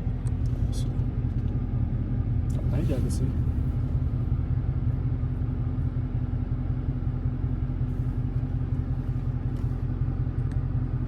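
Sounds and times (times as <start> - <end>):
car engine rumbling: 0.0 - 11.0.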